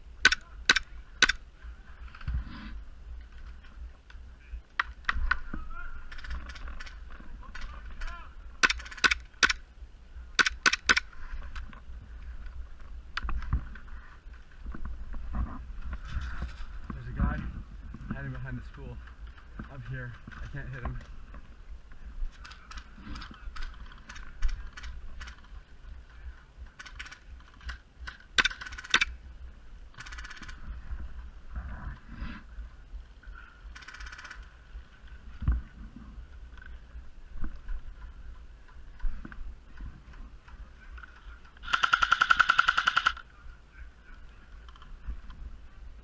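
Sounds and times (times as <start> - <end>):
airsoft guns firing: 6.0 - 9.6, 10.4 - 11.1, 28.4 - 29.1, 30.0 - 30.6, 33.8 - 34.4, 41.6 - 43.2.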